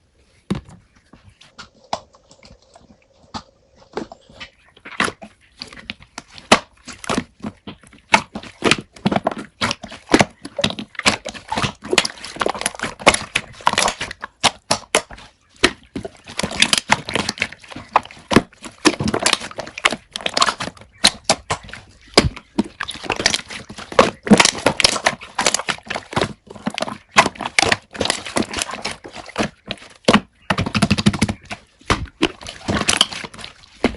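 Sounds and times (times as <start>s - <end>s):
slime squished with wet pops: 8.1s - 33.9s.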